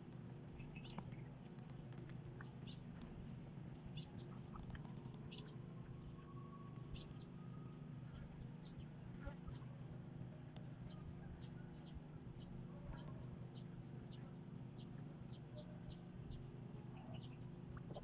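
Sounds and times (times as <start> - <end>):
steady low hum: 0.0 - 18.0
small birds chirping: 0.5 - 6.2, 10.6 - 18.0.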